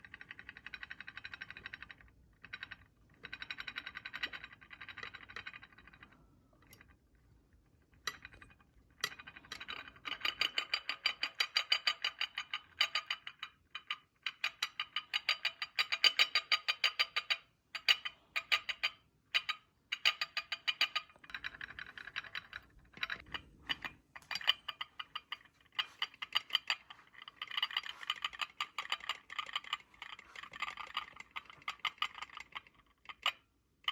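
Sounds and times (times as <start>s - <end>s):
ceramic cups rattling: 21.4s - 33.2s.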